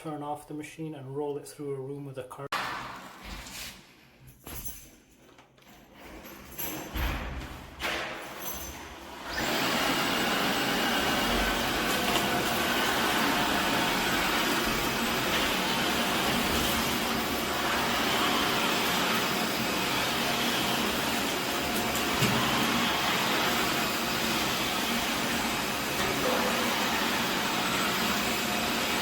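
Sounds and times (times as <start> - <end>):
floor cleaner motor and brush running: 7.4 - 29.0.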